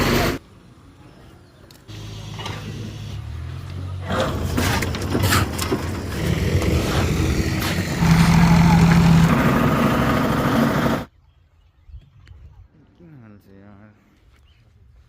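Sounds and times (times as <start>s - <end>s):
heavy vehicle engine running: 0.0s - 0.4s, 1.9s - 11.1s.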